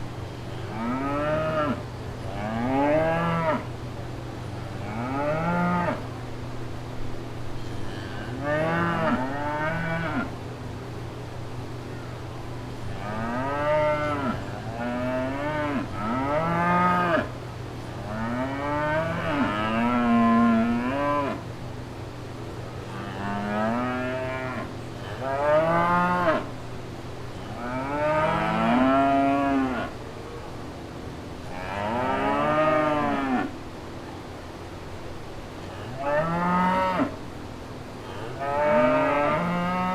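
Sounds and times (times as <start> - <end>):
steady low hum: 0.0 - 39.9
cows mooing: 0.6 - 3.7, 8.0 - 10.4, 13.0 - 17.4, 18.0 - 21.4, 22.8 - 26.5, 27.5 - 30.0, 31.5 - 33.6, 35.8 - 37.2, 38.1 - 39.9.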